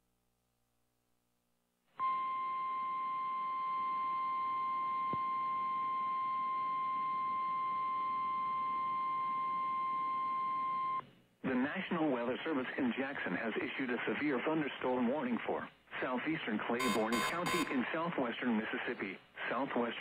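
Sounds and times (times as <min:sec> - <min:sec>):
steady high warning tone: 0:16.8 - 0:17.8
radio hiss: 0:16.8 - 0:20.0.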